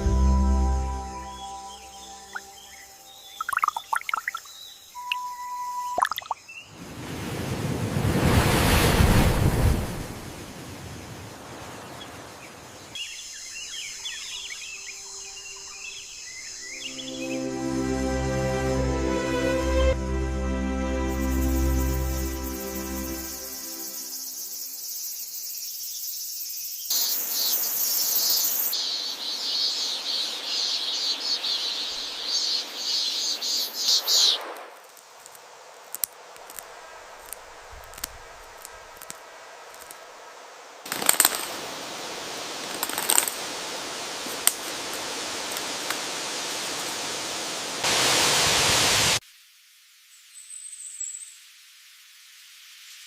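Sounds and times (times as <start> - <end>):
high hiss: 19.9 - 49.7.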